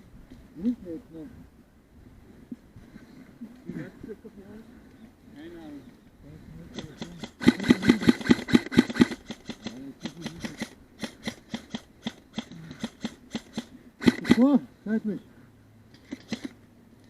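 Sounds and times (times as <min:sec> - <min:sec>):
airsoft gun shots: 0:06.8 - 0:14.5.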